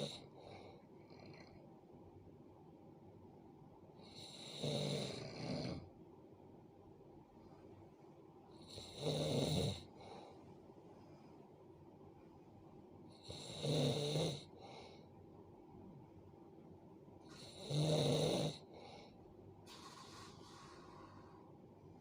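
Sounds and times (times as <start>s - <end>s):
person snoring: 4.0s - 5.9s, 8.6s - 10.2s, 13.2s - 14.6s, 17.3s - 18.8s
soft breath: 9.8s - 11.8s, 14.5s - 15.3s, 18.6s - 22.0s.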